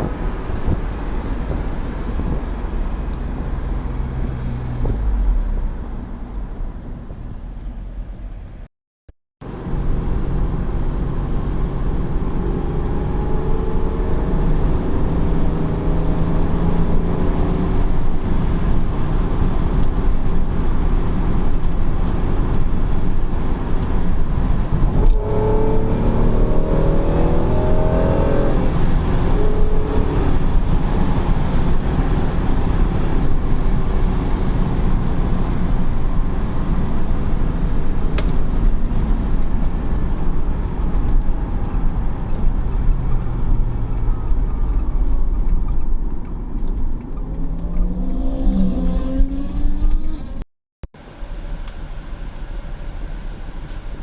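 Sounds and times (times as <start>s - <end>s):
road and wind noise: 0.0s - 8.7s, 9.4s - 50.4s
car engine accelerating: 9.4s - 50.5s.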